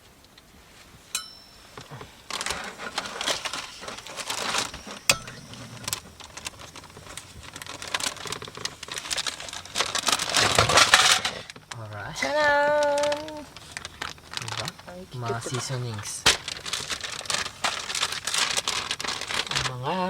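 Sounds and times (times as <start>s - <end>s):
light ringing clink: 1.1s - 2.0s, 5.1s - 5.6s
plastic packaging crinkling: 1.6s - 20.0s.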